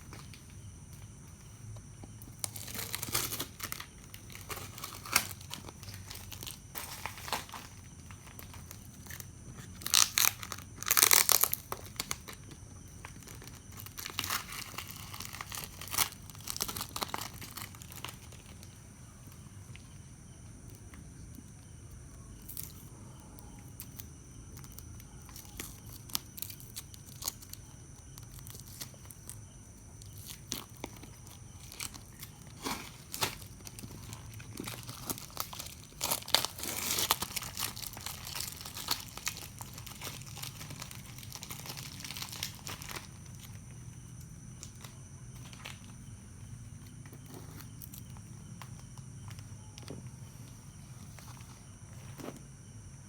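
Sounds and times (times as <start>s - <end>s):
packaging crinkling and tearing: 2.3s - 18.8s, 23.8s - 43.7s.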